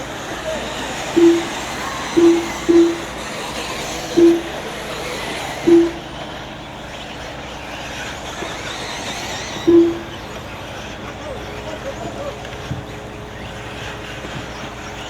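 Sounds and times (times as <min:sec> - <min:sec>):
short beeps: 0:00.0 - 0:06.2, 0:08.6 - 0:10.4
rc cars motor and tyre noise: 0:00.0 - 0:15.0.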